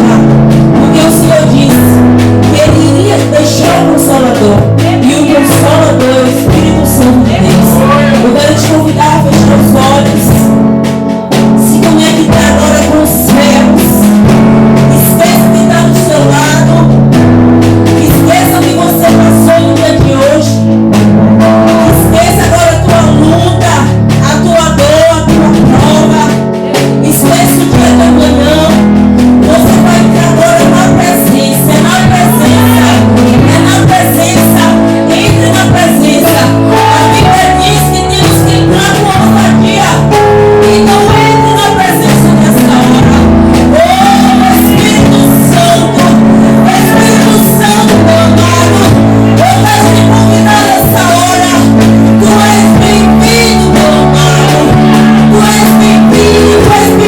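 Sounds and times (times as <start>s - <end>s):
person singing: 0.0s - 10.6s, 21.4s - 28.8s, 29.4s - 57.0s
sustained bass and chords: 0.0s - 57.0s.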